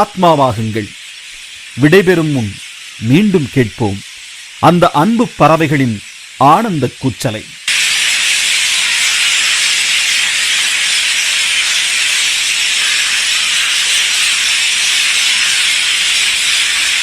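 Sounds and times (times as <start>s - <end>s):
flock of birds calling: 8.7s - 17.0s.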